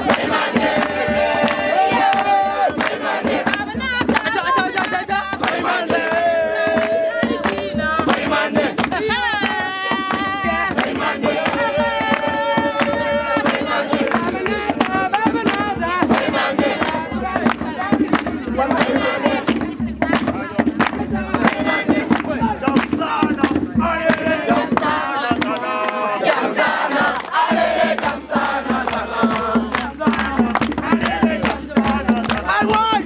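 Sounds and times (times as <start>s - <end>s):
group chanting in unison: 0.0s - 33.0s
sharp rhythmic beats: 0.0s - 33.0s.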